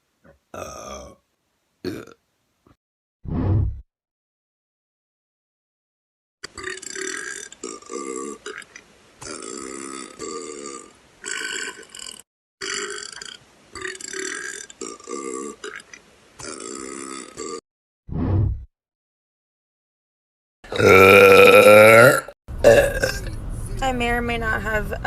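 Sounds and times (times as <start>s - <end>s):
woman burping: 0.5s - 1.2s, 1.9s - 2.2s, 20.7s - 23.4s.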